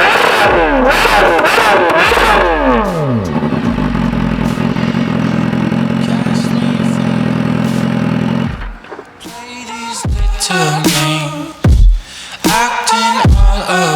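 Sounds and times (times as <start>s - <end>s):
motorcycle engine idling: 0.5s - 8.8s.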